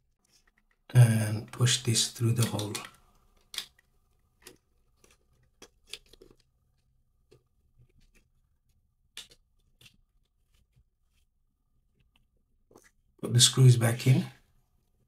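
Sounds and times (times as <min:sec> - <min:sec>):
small plastic parts clicking: 0:00.2 - 0:01.6, 0:02.3 - 0:11.2.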